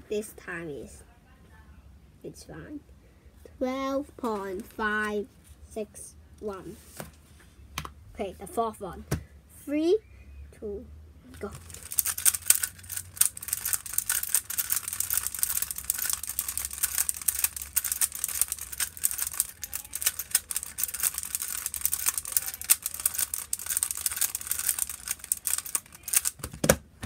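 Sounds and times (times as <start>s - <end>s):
plastic cube clicking: 11.6s - 26.8s.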